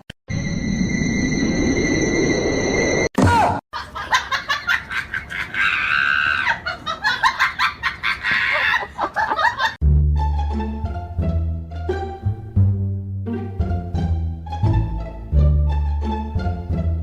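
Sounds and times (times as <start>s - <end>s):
person laughing hard: 3.8s - 9.8s.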